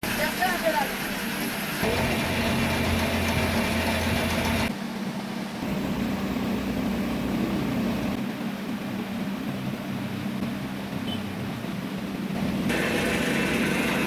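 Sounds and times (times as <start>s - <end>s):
lathe motor humming: 1.8s - 4.7s, 12.7s - 14.0s.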